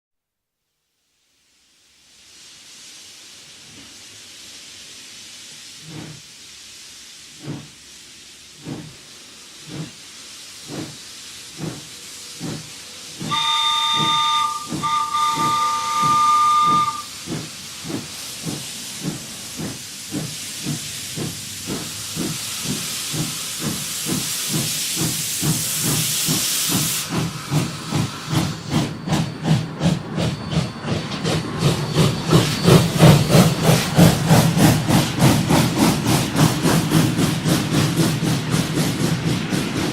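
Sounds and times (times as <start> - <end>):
steady steam hiss: 1.0 - 39.9
steam locomotive chuffing: 2.8 - 39.9
train whistle chord: 13.3 - 17.2.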